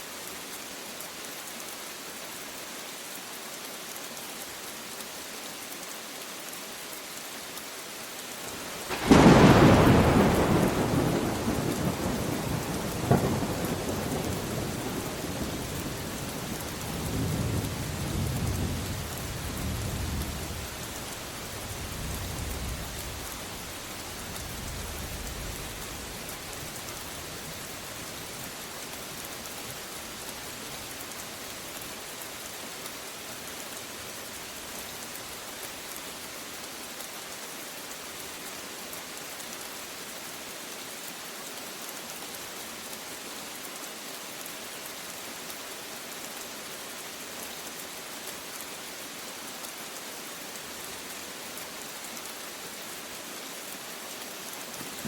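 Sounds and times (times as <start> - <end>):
steady rain falling: 0.0 - 55.0
low thunder rumble: 9.0 - 15.0.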